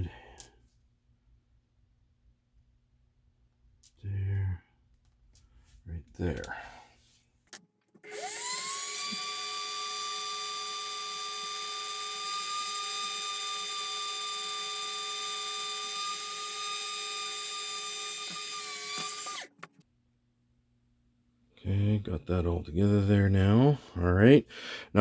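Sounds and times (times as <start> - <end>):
rotary drill whining: 8.0 - 19.7.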